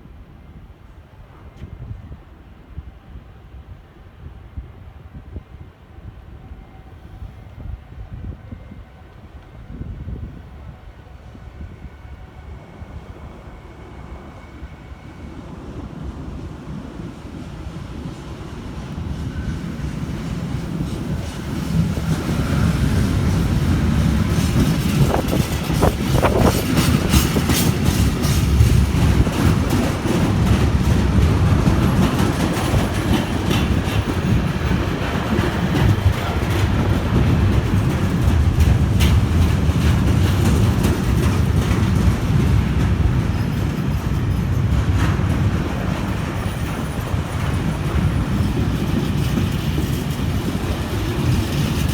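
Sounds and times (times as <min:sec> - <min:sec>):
train rumbling past: 0:00.0 - 0:51.9
wheels clicking over rails: 0:20.2 - 0:51.9.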